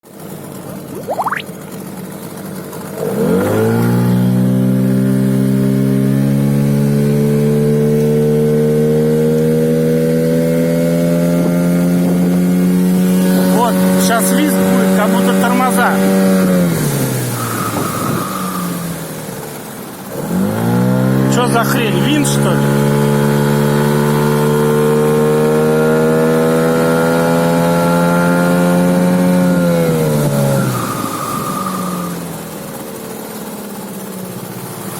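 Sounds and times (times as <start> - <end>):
outboard motor running: 0.1 - 34.9
high whistle rising in pitch: 0.9 - 1.4, 30.6 - 32.7.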